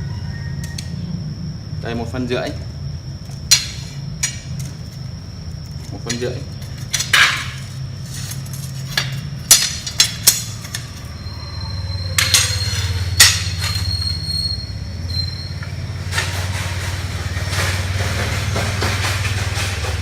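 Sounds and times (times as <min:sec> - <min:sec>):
steady low hum: 0:00.0 - 0:20.0
thin high squeal: 0:10.4 - 0:17.7.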